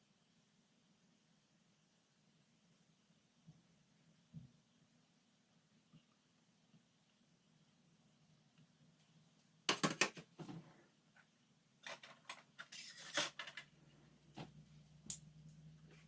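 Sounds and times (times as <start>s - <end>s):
kitchen items clicking and clattering: 9.7s - 10.6s, 11.8s - 13.8s.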